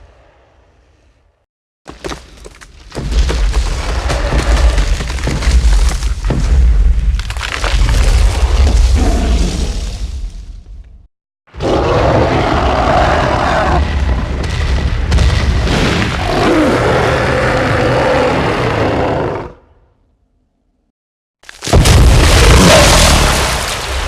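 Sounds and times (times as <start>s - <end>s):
deep roar of giant ape: 8.9s - 9.8s, 11.6s - 14.3s, 16.1s - 19.8s, 22.3s - 23.4s.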